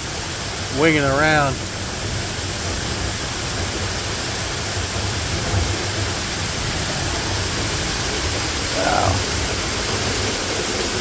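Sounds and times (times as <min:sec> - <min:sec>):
heavy rain: 0:00.0 - 0:11.0
waterfalls gushing: 0:00.0 - 0:11.0.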